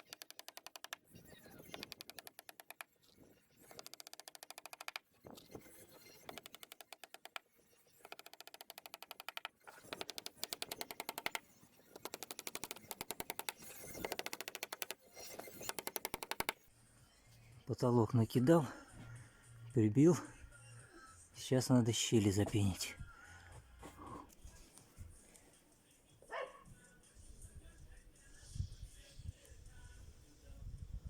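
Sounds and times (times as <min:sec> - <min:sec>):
rapid mechanical tapping: 0:00.0 - 0:02.9, 0:03.6 - 0:05.0, 0:06.1 - 0:16.6.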